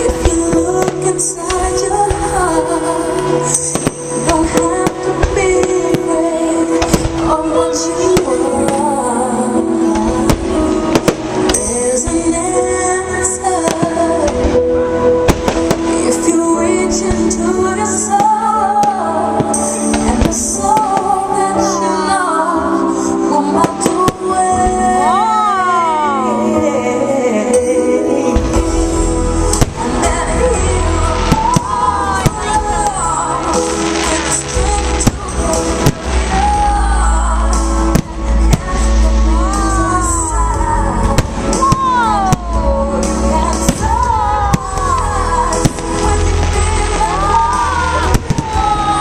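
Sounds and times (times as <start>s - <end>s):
fireworks bangs: 0.0s - 9.1s, 9.8s - 14.6s, 15.2s - 21.2s, 28.4s - 40.4s, 43.4s - 49.0s
woman singing over loudspeakers: 0.0s - 49.0s
firework bangs: 15.2s - 16.4s, 29.5s - 37.1s.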